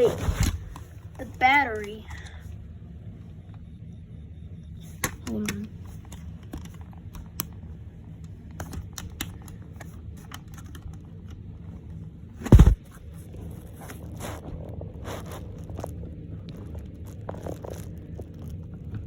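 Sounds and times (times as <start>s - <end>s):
heavy thump: 12.4s - 12.9s.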